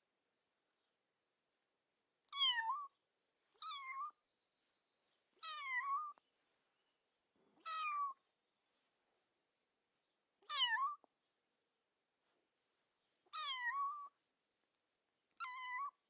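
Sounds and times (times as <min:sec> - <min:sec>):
kitten meowing: 0:03.6 - 0:04.1, 0:07.6 - 0:08.2, 0:10.5 - 0:11.0, 0:13.4 - 0:14.1, 0:15.4 - 0:15.9.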